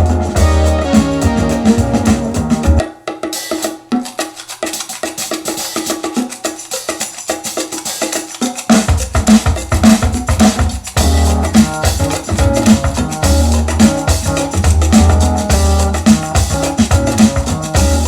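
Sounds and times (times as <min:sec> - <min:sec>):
electronic music with steady beat: 0:00.0 - 0:02.8, 0:11.0 - 0:18.0
clicky wood-block-like percussion: 0:03.4 - 0:18.0.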